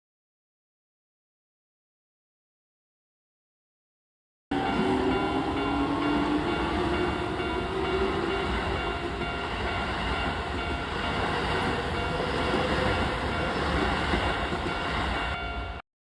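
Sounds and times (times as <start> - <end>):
train wheels on rails: 4.5 - 15.8.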